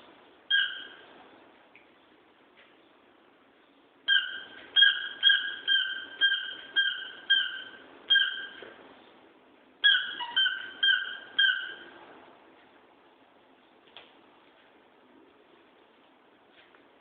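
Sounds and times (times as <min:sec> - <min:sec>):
rubber squeaky toy squeaking: 0:00.5 - 0:01.0, 0:04.1 - 0:08.6, 0:09.8 - 0:11.9.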